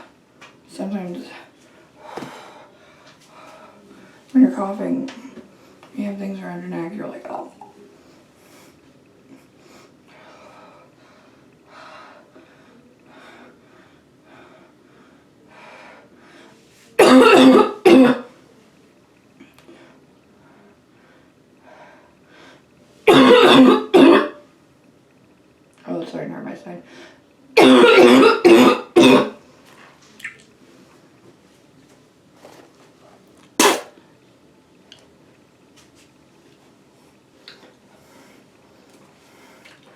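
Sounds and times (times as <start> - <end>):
woman coughing: 17.0 - 18.3, 23.1 - 24.4, 27.6 - 29.4, 33.6 - 33.9.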